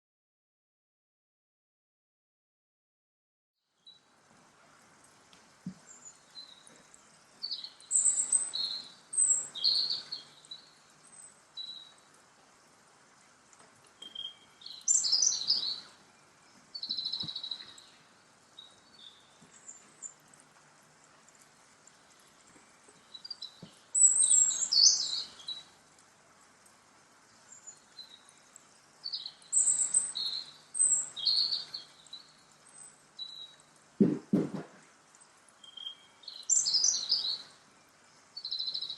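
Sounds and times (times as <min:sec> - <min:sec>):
birds chirping: 0:05.5 - 0:12.2, 0:13.8 - 0:38.9
dull low thumps: 0:34.0 - 0:34.8.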